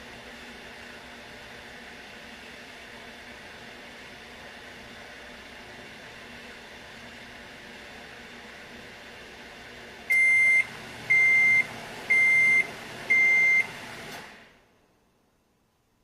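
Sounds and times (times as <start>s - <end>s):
microwave oven humming: 0.0s - 15.0s
microwave high-pitched beeps: 10.1s - 13.8s.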